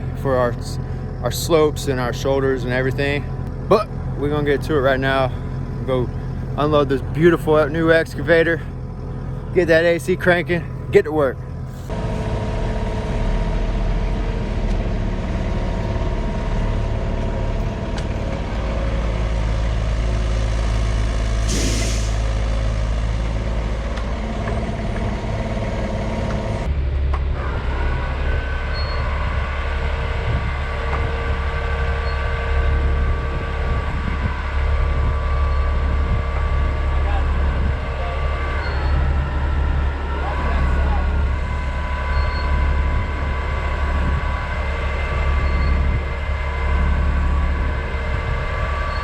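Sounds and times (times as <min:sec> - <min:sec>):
heavy machinery engine running: 0:00.0 - 0:49.0
short hiss: 0:21.5 - 0:22.3.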